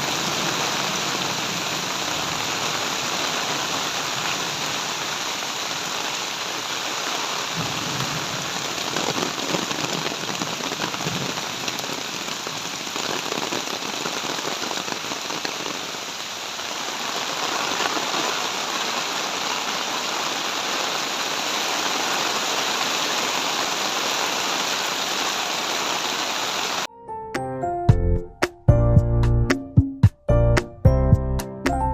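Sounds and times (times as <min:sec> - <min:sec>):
heavy rain falling: 0:00.0 - 0:26.9
music: 0:26.9 - 0:31.9.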